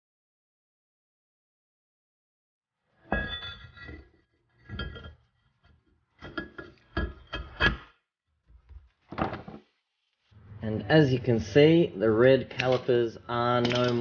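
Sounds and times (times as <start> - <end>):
metal tools clinking: 3.1 - 5.1, 13.6 - 14.0.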